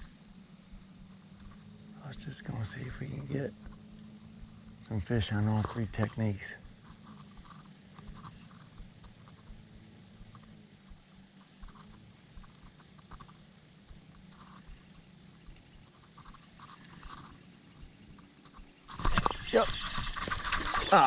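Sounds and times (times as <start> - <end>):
insects shrilling: 0.0 - 21.0
short faint calls: 18.9 - 21.0.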